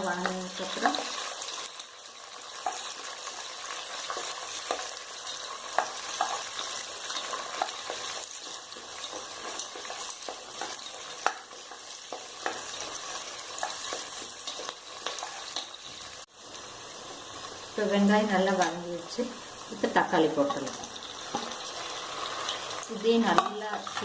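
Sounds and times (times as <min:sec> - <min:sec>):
onions sizzling in oil: 0:00.0 - 0:24.0
spoon scraping and tapping pan: 0:04.1 - 0:16.0, 0:20.4 - 0:21.8, 0:23.2 - 0:24.0.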